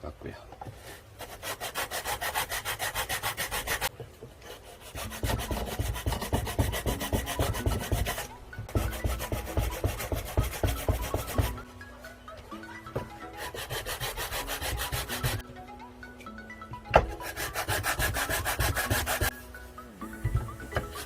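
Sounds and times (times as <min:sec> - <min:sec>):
wood rubbing on sandpaper: 0:00.9 - 0:11.6, 0:13.3 - 0:15.4, 0:17.2 - 0:19.3.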